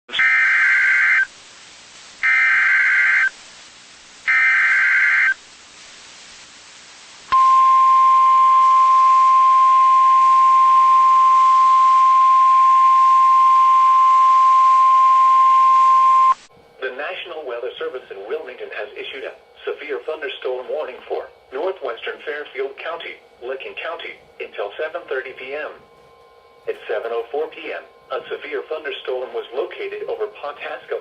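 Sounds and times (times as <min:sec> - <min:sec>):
screechy digital data bursts: 0:00.2 - 0:01.3, 0:02.2 - 0:03.3, 0:04.3 - 0:05.4
steady single-pitch attention tone: 0:07.3 - 0:16.4.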